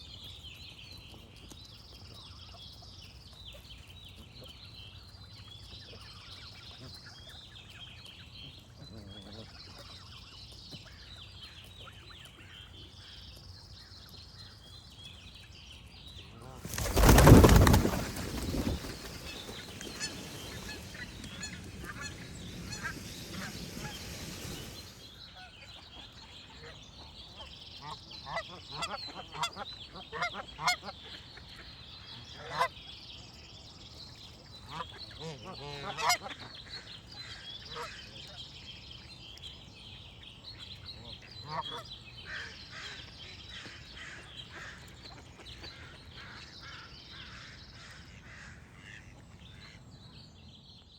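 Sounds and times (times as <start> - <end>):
small birds chirping and singing: 0.0 - 50.9
geese honking: 16.5 - 25.1.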